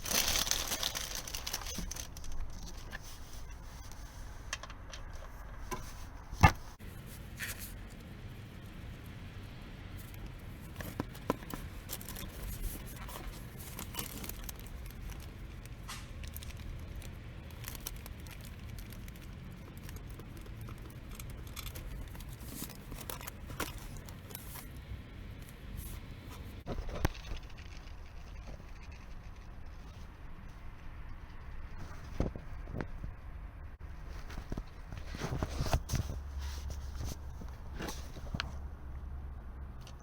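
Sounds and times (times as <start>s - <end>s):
low steady hum: 0.0s - 40.0s
objects being handled: 9.9s - 28.1s.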